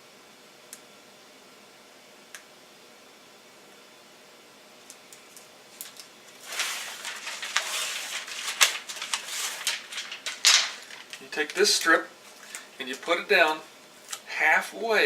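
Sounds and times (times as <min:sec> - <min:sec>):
foil tape crinkling and crackling: 0:05.3 - 0:14.3.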